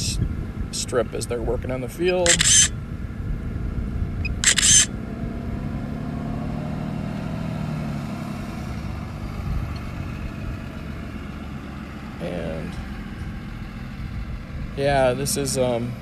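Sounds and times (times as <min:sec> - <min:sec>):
engine humming: 0:00.0 - 0:16.0
camera shutter: 0:02.2 - 0:02.7, 0:04.3 - 0:04.9.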